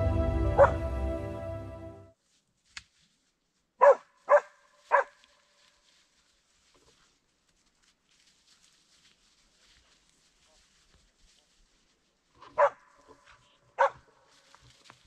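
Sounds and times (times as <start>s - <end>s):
dog barking: 0.6s - 0.8s, 3.8s - 5.2s, 12.5s - 14.1s.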